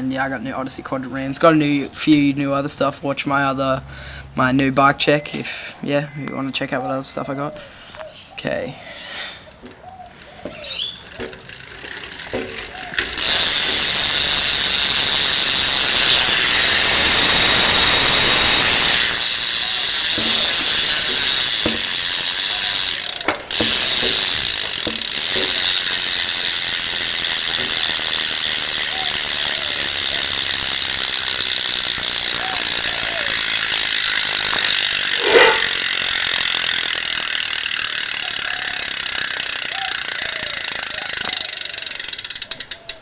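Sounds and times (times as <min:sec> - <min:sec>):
bicycle hub freewheeling buzz: 0:10.1 - 0:43.0.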